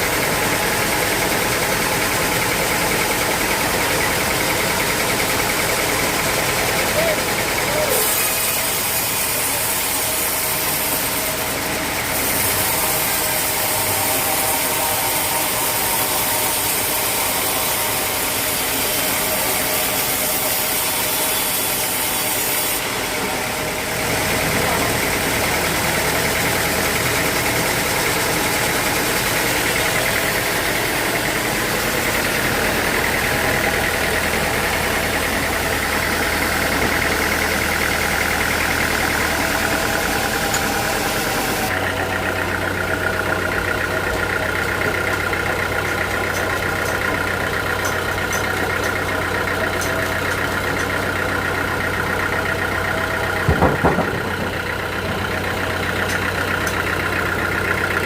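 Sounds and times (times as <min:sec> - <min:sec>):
sawmill machinery drone: 0:00.0 - 0:58.0
knocks: 0:53.5 - 0:54.5.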